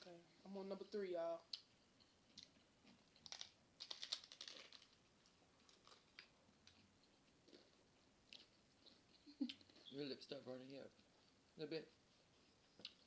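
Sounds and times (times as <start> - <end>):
taco shell crunching: 2.3 - 7.7.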